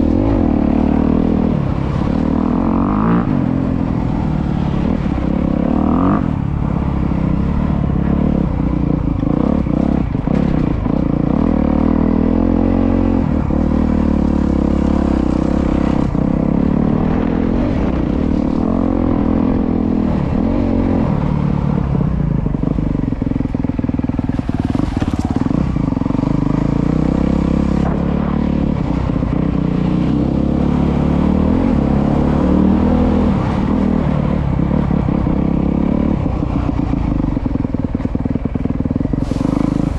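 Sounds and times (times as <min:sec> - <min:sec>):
motorcycle engine revving: 0:00.0 - 0:39.9
engine clatter: 0:07.8 - 0:11.5.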